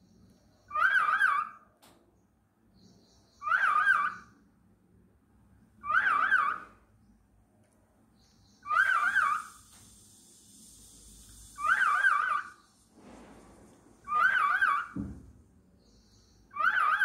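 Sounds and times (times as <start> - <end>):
cockatiel warbling call: 0.7 - 1.6, 3.4 - 4.3, 5.8 - 6.7, 8.6 - 9.6, 11.6 - 12.6, 14.1 - 15.0, 16.5 - 17.0.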